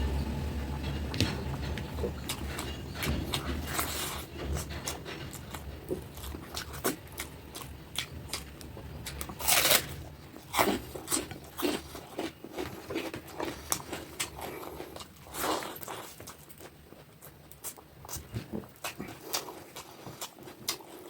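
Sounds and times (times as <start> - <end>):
person chewing and smacking: 5.3 - 21.0.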